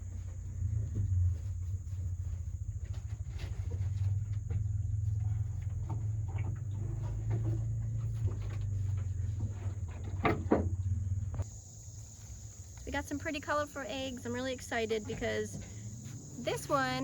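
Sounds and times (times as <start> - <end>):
low hum: 0.0 - 12.9
goats feeding with knocks and rustles: 0.0 - 17.0.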